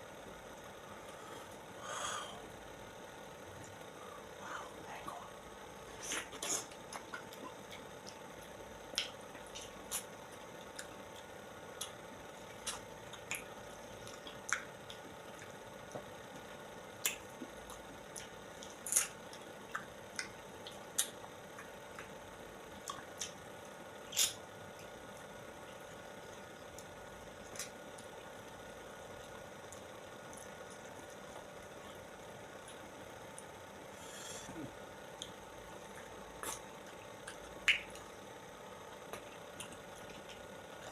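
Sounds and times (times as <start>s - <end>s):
faint steady hum: 0.0s - 40.9s
person eating wet mouth sounds: 24.1s - 24.4s, 34.0s - 38.1s.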